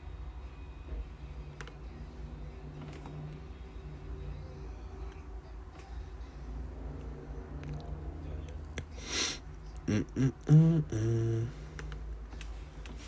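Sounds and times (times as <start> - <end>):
breathy hiss: 8.9 - 9.4
man humming: 9.8 - 11.7.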